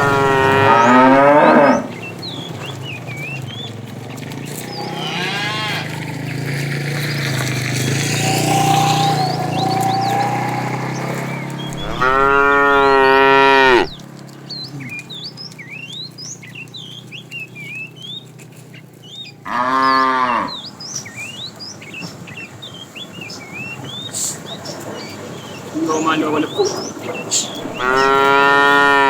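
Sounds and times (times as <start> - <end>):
cattle mooing: 0.0 - 2.0, 4.7 - 6.2, 8.1 - 14.0, 19.5 - 20.6, 27.3 - 29.0
small birds chirping: 0.0 - 29.0.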